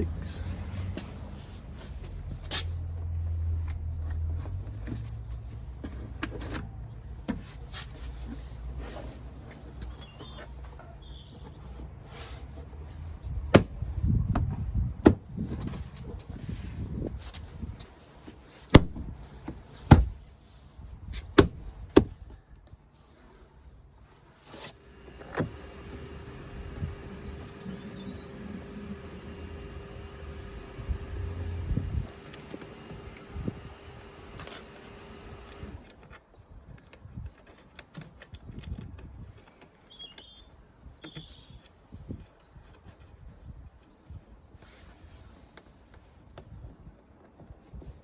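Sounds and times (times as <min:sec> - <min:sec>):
plastic trim rubbing: 0:18.6 - 0:20.2, 0:21.2 - 0:22.3.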